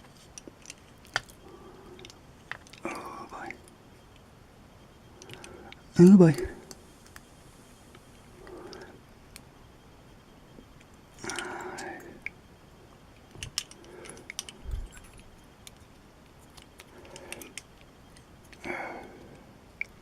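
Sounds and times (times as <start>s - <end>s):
lock tools clicking and scraping: 13.3s - 18.6s.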